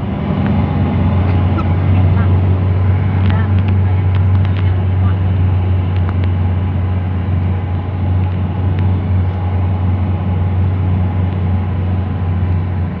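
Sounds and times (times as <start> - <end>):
motor engine droning: 0.0 - 13.0.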